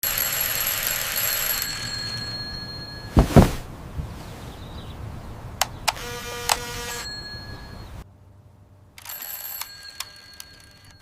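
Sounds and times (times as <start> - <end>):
bell-like ringing: 0.0 - 3.2, 6.9 - 8.0, 9.1 - 11.0
heavy thumps: 3.1 - 3.7.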